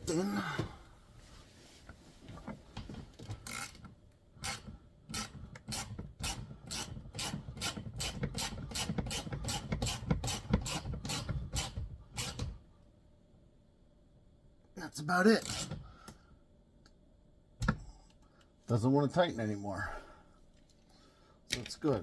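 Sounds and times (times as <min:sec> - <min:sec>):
ratchet wrench rasping: 0:03.4 - 0:03.8, 0:04.4 - 0:12.4.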